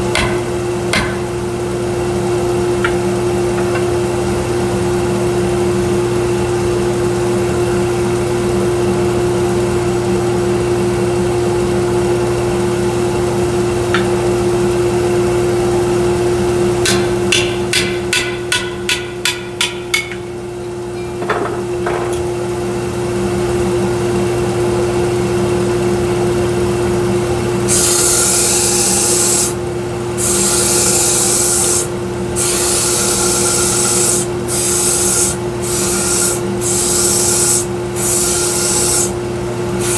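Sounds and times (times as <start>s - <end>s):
wood rasping on sanding belt: 27.7s - 29.6s, 30.2s - 39.2s
belt sander humming: 27.7s - 39.9s.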